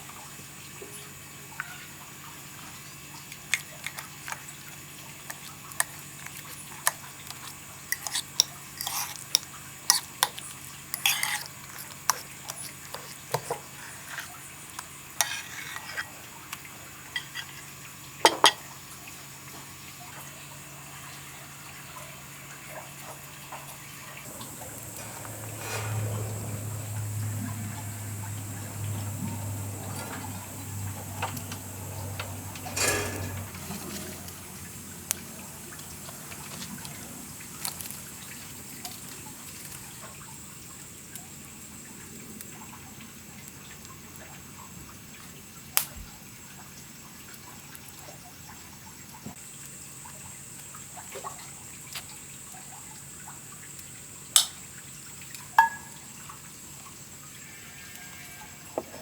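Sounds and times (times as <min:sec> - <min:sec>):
plantain frying in oil: 0:00.0 - 0:59.0
small crackles: 0:24.2 - 0:40.2.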